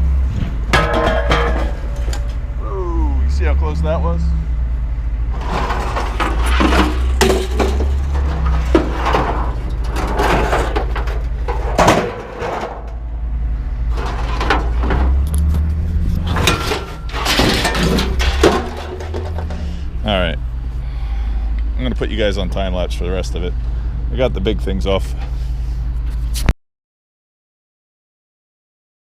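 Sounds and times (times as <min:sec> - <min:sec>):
scrap metal clanking and banging: 0:00.0 - 0:02.6, 0:05.3 - 0:13.2, 0:13.8 - 0:20.4
engine running: 0:00.0 - 0:26.5.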